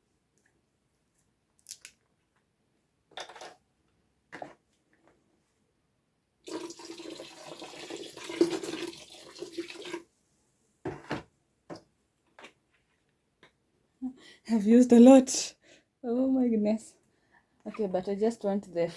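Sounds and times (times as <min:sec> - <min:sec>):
liquid pouring into container: 0:06.4 - 0:10.1.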